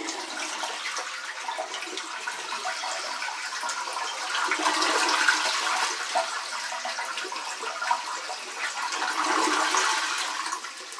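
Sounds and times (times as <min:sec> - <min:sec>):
toilet flushing: 0:00.0 - 0:10.9.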